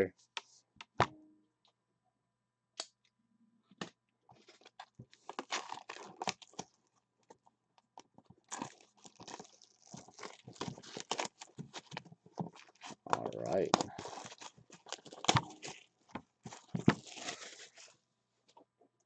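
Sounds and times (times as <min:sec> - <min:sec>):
plastic wrapping crinkling and tearing: 0:04.4 - 0:18.0.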